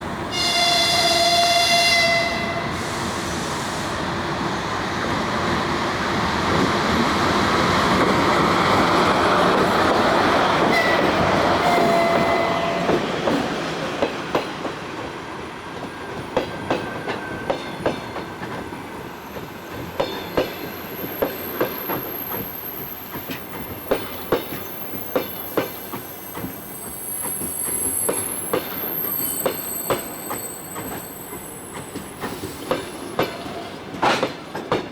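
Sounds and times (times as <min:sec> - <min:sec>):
train horn blast: 0:00.3 - 0:02.9, 0:10.7 - 0:13.0
train wheels clicking on rail joints: 0:06.2 - 0:34.9
faint high squeal: 0:20.8 - 0:32.6.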